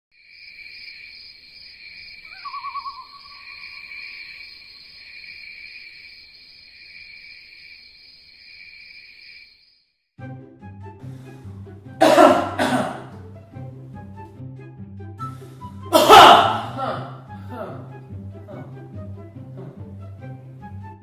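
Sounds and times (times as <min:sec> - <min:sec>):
crickets chirring: 0:00.2 - 0:10.0
warbling call: 0:02.2 - 0:04.8.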